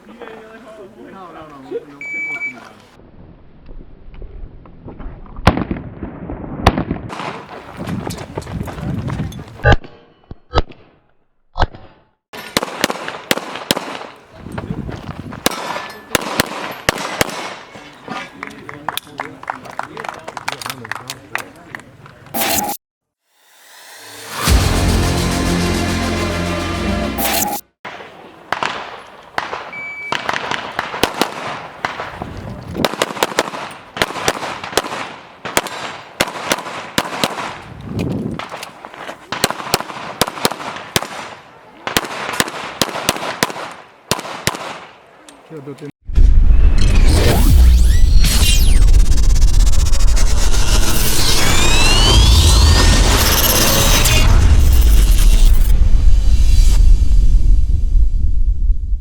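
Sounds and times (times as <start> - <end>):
short high beep: 2.0 - 2.6, 29.7 - 30.2
pistol shots: 12.4 - 14.2, 15.4 - 17.7, 32.8 - 37.6, 39.3 - 44.9.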